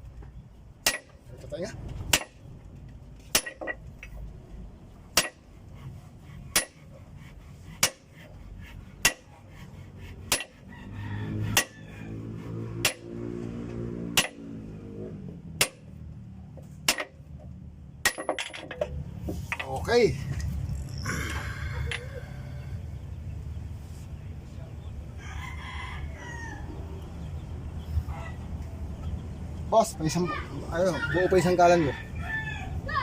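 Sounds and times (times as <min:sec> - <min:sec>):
low hum: 0:11.4 - 0:24.7.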